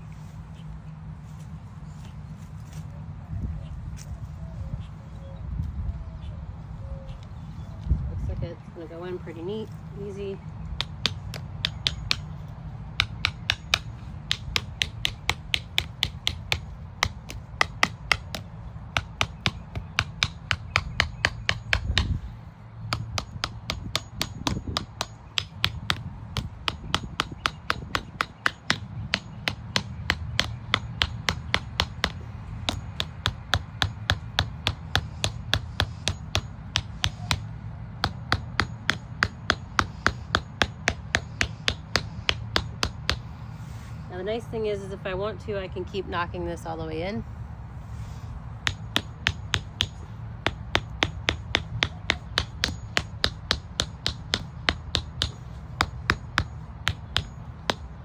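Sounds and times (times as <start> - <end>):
hammer tapping plastic guard: 10.7 - 22.2, 22.9 - 43.3, 48.6 - 58.0.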